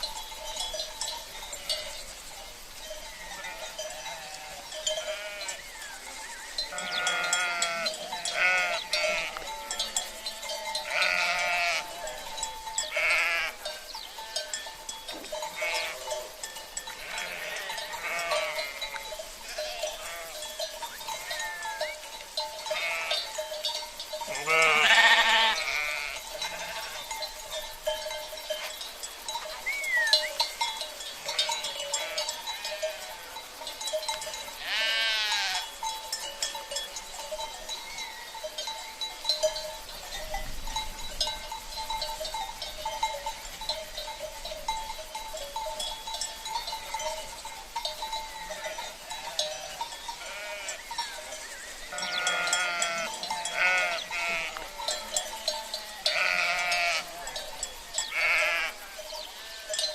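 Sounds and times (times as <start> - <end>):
cowbells ringing: 0.0 - 59.9
sheep bleating: 3.2 - 5.9, 6.7 - 12.2, 12.9 - 13.8, 15.5 - 16.1, 17.0 - 20.5, 22.7 - 23.3, 24.3 - 27.1, 31.2 - 33.3, 34.6 - 35.7, 48.5 - 50.8, 51.9 - 55.0, 55.8 - 57.4, 58.1 - 59.8.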